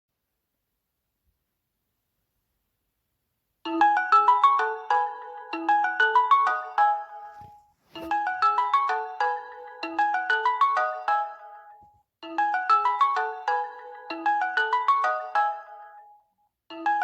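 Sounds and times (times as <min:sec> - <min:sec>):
phone alarm melody: 0:03.7 - 0:17.0.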